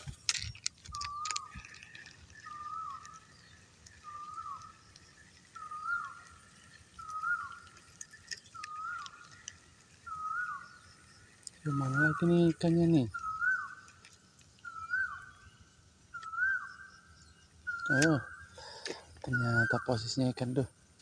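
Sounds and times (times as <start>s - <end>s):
animal whistled call: 2.4s - 4.8s, 5.6s - 7.8s, 10.0s - 10.9s, 11.6s - 14.0s, 14.6s - 15.4s, 16.1s - 18.5s.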